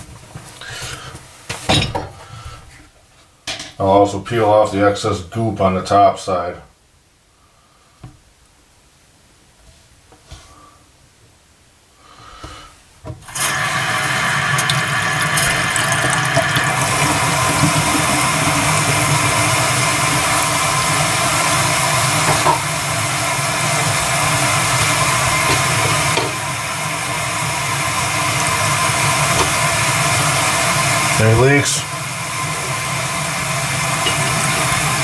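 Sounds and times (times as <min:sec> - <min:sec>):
faucet water running into sink: 0:13.2 - 0:35.0.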